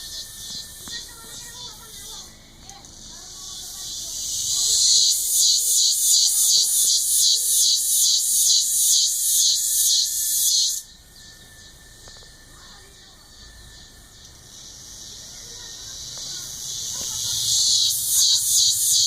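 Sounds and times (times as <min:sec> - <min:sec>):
cicadas buzzing: 0:00.0 - 0:19.0.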